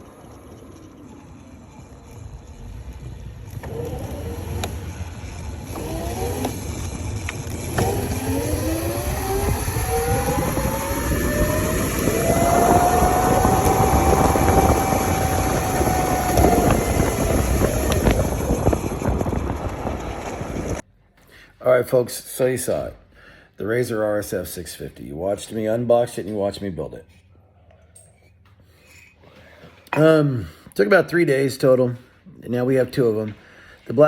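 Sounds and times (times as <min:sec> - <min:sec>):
electric motor whine: 0:00.0 - 0:20.8
low rumble: 0:00.0 - 0:20.8.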